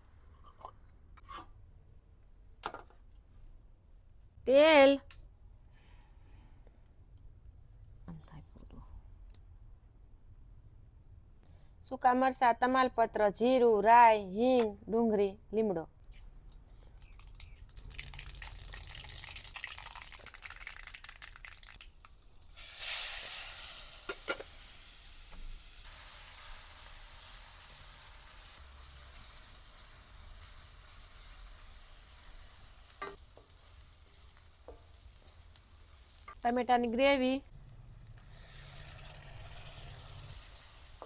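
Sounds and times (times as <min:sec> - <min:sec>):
spices sizzling in hot oil: 0:17.0 - 0:37.0, 0:38.1 - 0:41.0.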